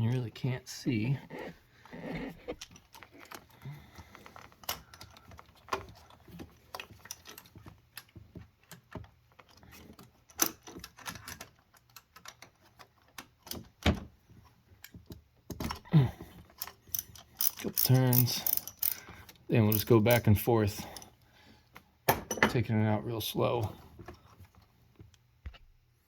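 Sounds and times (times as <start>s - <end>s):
hand tools clinking on metal: 16.6s - 19.0s.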